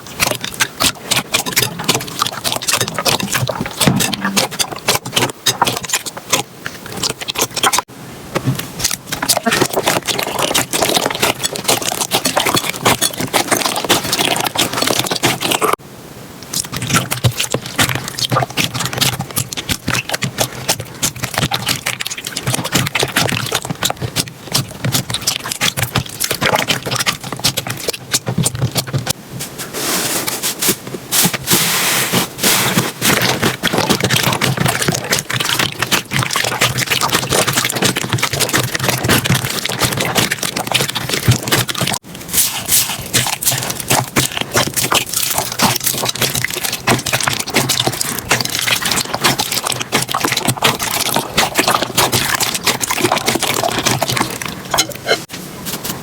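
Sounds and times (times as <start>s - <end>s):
slime crackling and popping: 8.8s - 15.8s, 16.5s - 29.1s, 32.4s - 55.2s.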